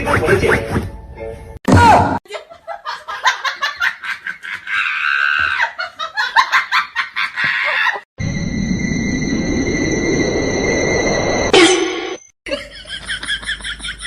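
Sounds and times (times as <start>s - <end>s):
steady high tones: 8.2s - 12.4s.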